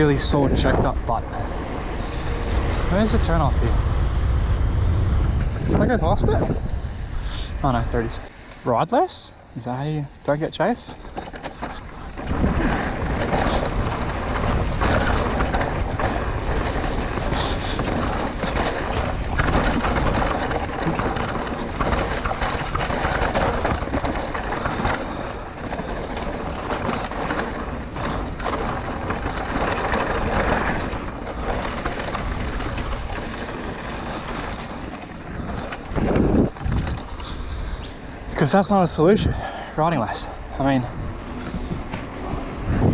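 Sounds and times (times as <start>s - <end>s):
tyres rolling on dirt: 0.0s - 42.9s
bike rattling and knocking: 9.3s - 38.0s, 40.8s - 42.9s.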